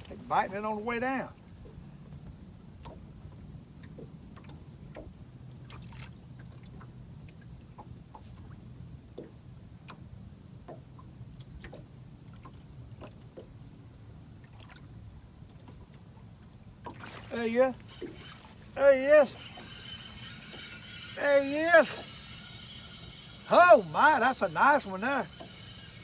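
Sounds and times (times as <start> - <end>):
water lapping against hull: 0.0 - 26.0
small ticks: 16.9 - 26.0
low steady hum: 17.0 - 26.0.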